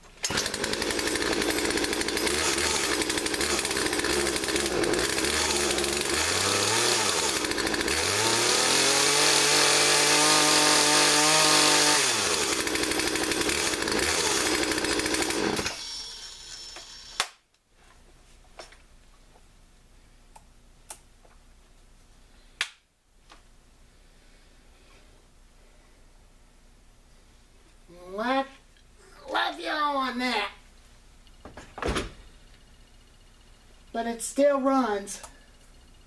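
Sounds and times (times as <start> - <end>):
chainsaw idling and revving: 0.2 - 17.2.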